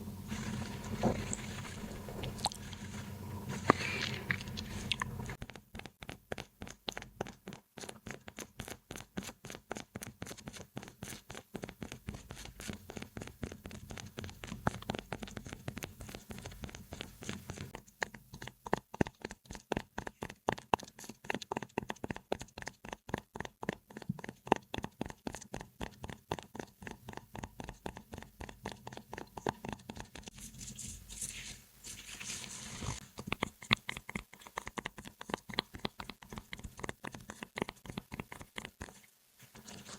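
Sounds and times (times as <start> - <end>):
crinkly rustle: 0.2 - 5.4.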